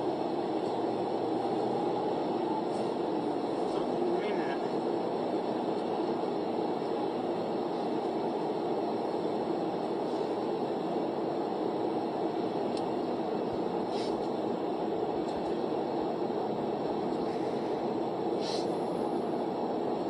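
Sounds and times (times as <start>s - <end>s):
car driving road noise: 0.5s - 4.8s.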